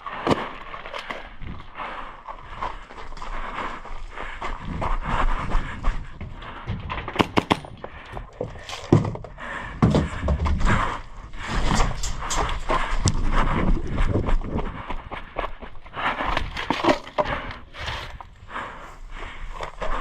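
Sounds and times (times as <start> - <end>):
heavier thumps: 5.6 - 13.4
airsoft guns snapping shots: 7.2 - 7.8.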